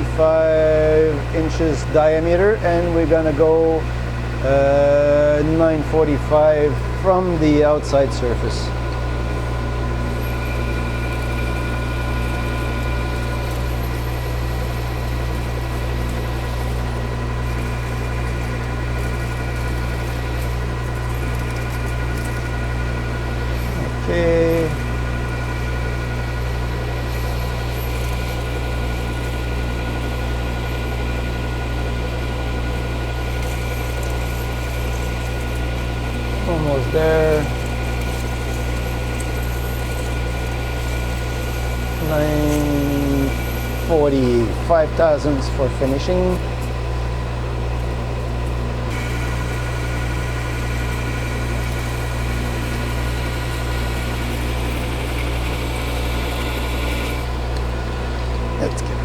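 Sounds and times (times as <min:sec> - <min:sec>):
lathe cutting: 0:00.0 - 0:59.0
boring bar cutting hiss: 0:48.9 - 0:57.4.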